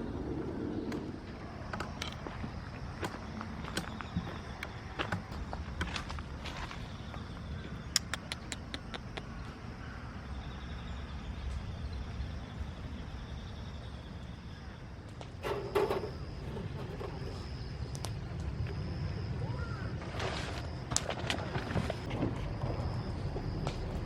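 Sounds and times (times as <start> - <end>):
sharp clicks: 7.9 - 9.3
faint high bird calls: 19.3 - 20.6.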